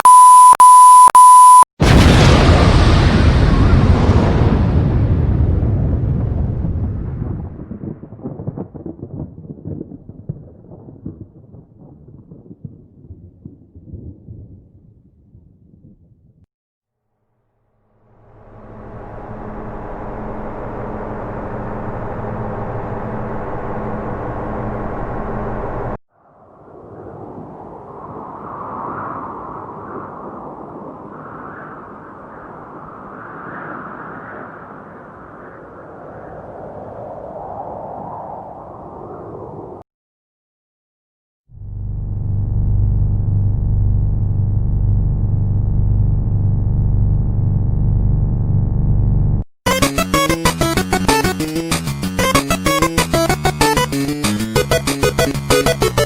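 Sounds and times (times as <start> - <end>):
rushing noise: 17.9 - 36.0
droning engine hum: 18.0 - 26.0, 41.6 - 49.4.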